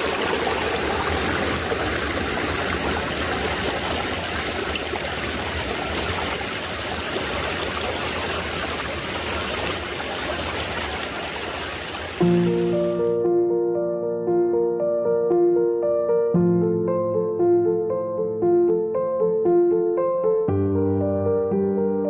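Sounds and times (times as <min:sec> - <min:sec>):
stream rushing over rocks: 0:00.0 - 0:13.0.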